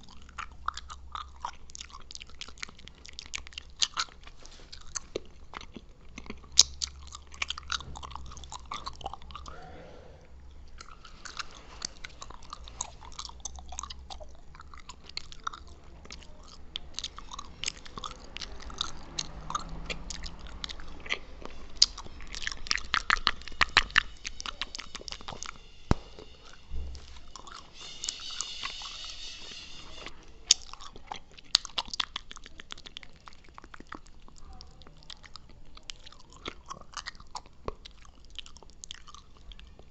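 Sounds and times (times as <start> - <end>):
wet mouth clicks chewing gum: 0.0 - 9.5, 10.5 - 26.7, 30.4 - 39.9
high rasping sound: 16.5 - 31.1.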